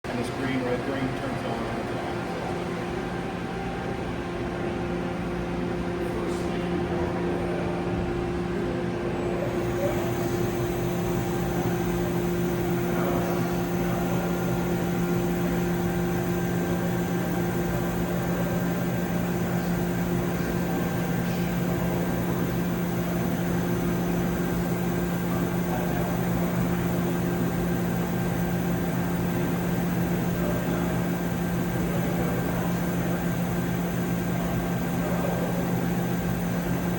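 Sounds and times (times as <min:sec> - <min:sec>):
lathe mechanical hum: 0:00.1 - 0:36.9
faint high whine: 0:09.2 - 0:36.9.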